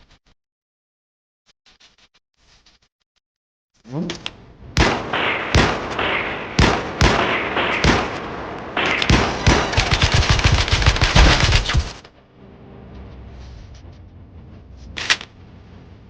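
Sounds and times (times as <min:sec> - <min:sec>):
single gunshots with echo: 0:04.8 - 0:11.9
rapid automatic gunfire: 0:04.8 - 0:12.1.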